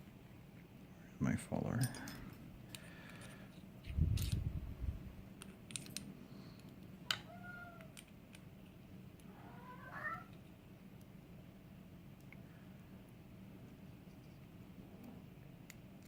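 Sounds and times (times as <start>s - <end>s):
lock and tools clicking: 4.1s - 4.5s, 5.4s - 6.1s
cat meowing: 7.2s - 7.9s, 9.3s - 10.4s.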